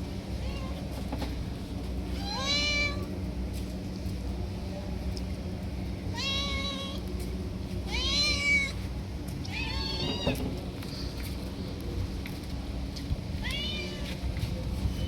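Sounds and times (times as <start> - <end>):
steady low hum: 0.0 - 15.0
cats meowing: 2.2 - 3.1, 6.2 - 7.0, 7.9 - 8.8, 9.5 - 10.4, 13.4 - 14.2.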